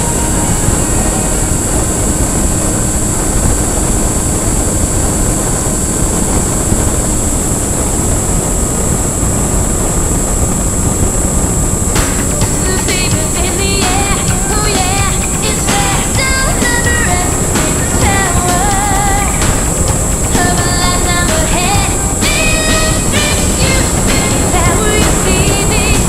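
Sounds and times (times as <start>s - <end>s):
music: 0.0s - 3.9s, 11.9s - 26.0s
model aircraft propeller whine: 0.0s - 26.0s.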